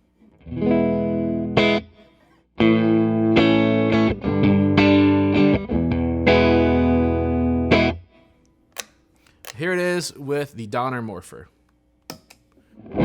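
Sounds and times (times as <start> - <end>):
electric guitar chords: 0.4 - 2.0, 2.6 - 8.1, 12.8 - 13.0.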